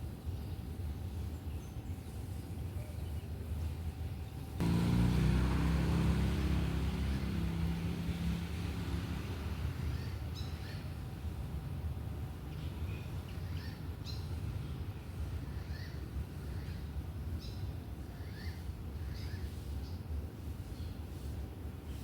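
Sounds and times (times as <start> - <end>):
vehicle engine humming: 4.6 - 10.5.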